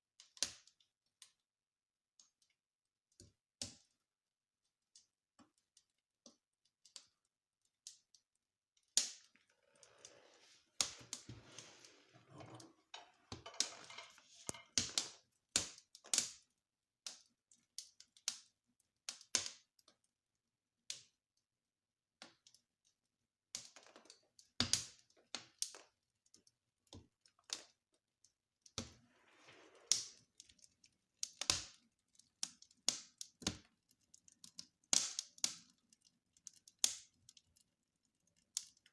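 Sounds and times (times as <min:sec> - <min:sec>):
wood fire crackling: 0:09.0 - 0:16.4, 0:28.6 - 0:38.9
soft hissing of fire: 0:09.1 - 0:15.2, 0:28.8 - 0:31.8.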